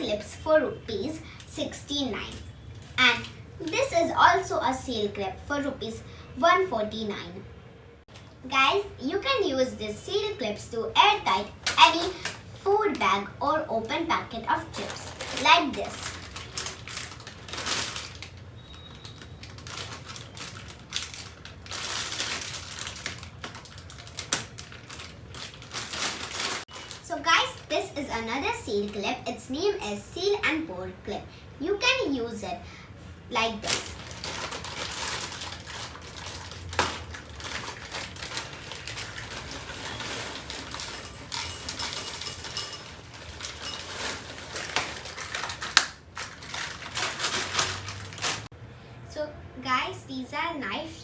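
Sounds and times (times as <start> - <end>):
plastic bag rustling: 9.9 - 28.0, 33.3 - 48.5
chips packet crinkling: 14.6 - 27.0, 33.5 - 48.5.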